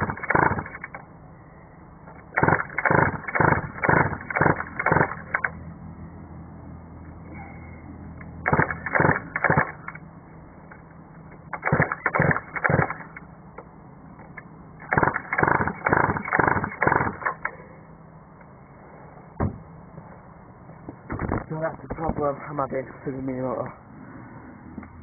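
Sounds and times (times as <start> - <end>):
small engine turning over: 0.0 - 1.1, 2.2 - 5.6, 8.4 - 10.0, 11.5 - 13.2, 14.8 - 17.6.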